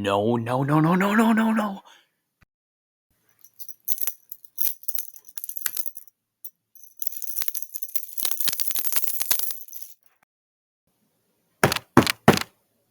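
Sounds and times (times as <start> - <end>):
small metal pieces clattering: 3.5 - 6.1, 6.8 - 10.1.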